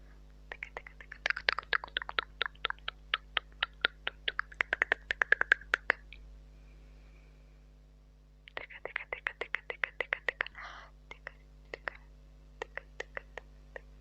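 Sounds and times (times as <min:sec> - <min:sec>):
wet tongue and lip clicks: 0:00.5 - 0:06.2, 0:08.5 - 0:12.0, 0:12.6 - 0:13.9.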